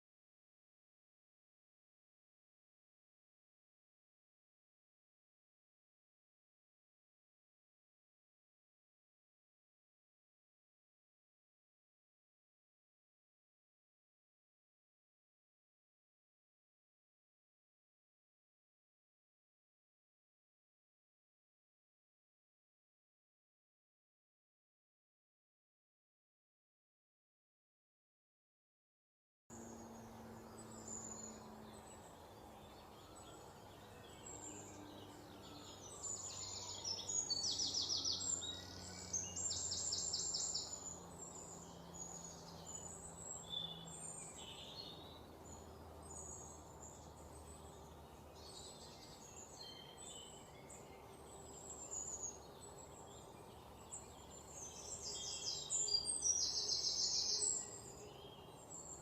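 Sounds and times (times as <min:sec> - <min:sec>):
birds chirping and singing: 0:29.6 - 0:59.0.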